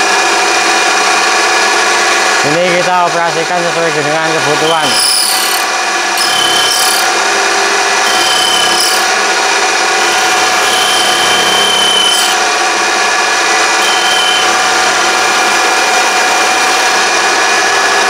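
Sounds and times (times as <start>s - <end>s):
lathe motor whine: 3.7s - 18.0s
high squeal from the cut: 4.6s - 7.1s, 8.0s - 9.1s, 10.0s - 12.4s, 13.8s - 14.6s
cutting tool scraping workpiece: 4.6s - 12.7s, 13.4s - 17.2s.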